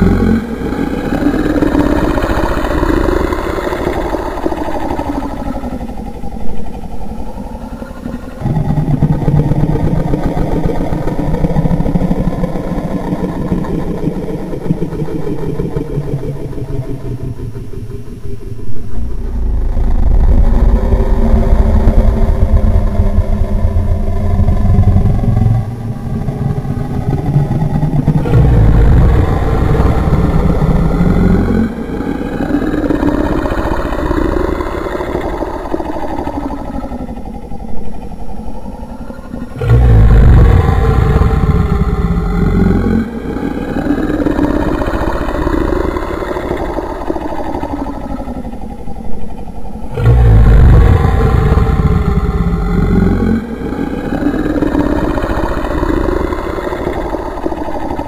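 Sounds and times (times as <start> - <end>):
person imitating an engine: 19.0 - 34.2, 39.6 - 45.6, 49.9 - 57.3.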